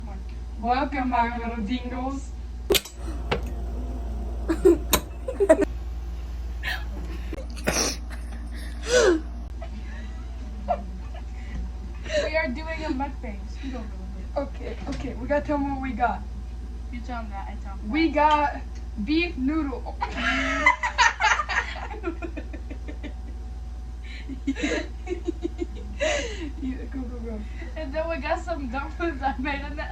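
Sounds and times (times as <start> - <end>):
sharp clicks: 2.7 - 4.1
steady low hum: 2.7 - 11.5
child laughing: 4.5 - 5.7.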